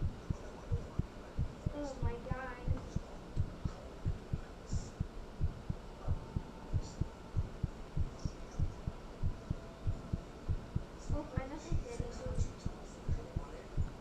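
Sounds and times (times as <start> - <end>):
heartbeat thuds: 0.0 - 14.0
steady hum: 0.0 - 14.0.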